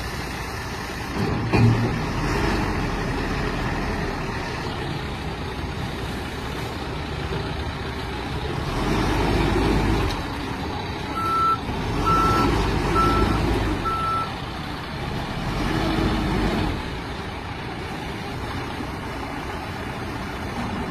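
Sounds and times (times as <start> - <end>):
diesel backhoe engine running: 0.0 - 20.9
reversing alarm beeps: 11.2 - 14.3.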